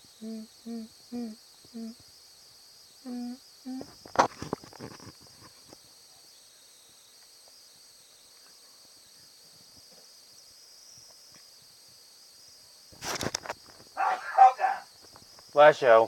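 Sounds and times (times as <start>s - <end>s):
high-pitched hiss: 0.0s - 16.0s
person humming: 0.2s - 2.0s, 3.0s - 3.9s
crackling clattering noise: 3.8s - 5.8s, 13.0s - 14.0s.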